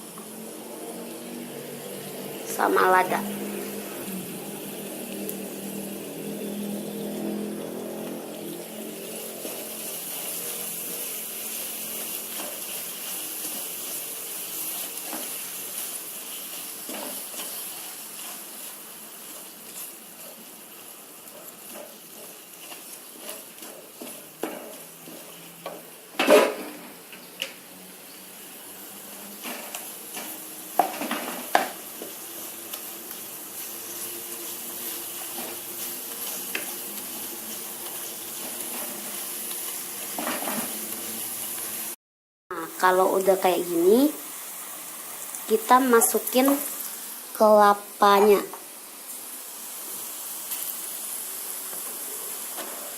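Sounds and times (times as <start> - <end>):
spice paste sizzling in a pan: 0.0 - 52.9
spatula scraping and knocking pan: 21.3 - 26.9.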